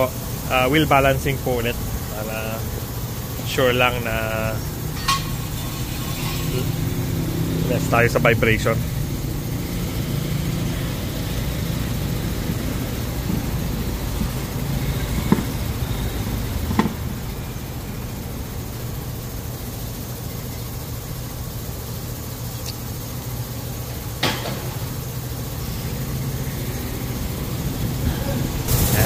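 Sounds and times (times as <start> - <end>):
engine humming: 0.0 - 29.0
sharp knocks: 15.1 - 15.7.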